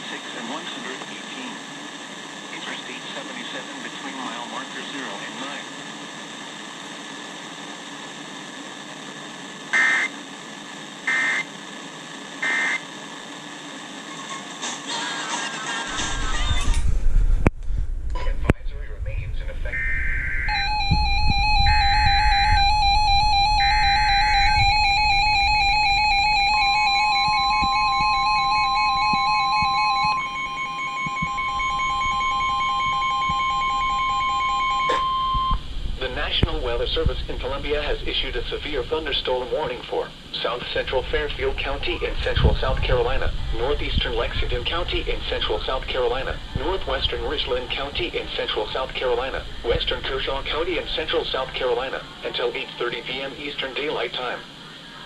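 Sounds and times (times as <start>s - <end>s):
weather radio hiss: 0.0s - 14.1s, 18.2s - 20.6s, 36.0s - 55.0s
screeching alert data tones: 9.8s - 10.1s, 11.1s - 11.5s, 12.4s - 12.8s, 19.7s - 35.6s.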